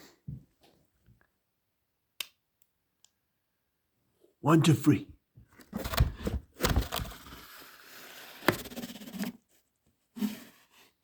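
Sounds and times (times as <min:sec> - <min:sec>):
wood scraping and knocking: 0:05.6 - 0:07.5.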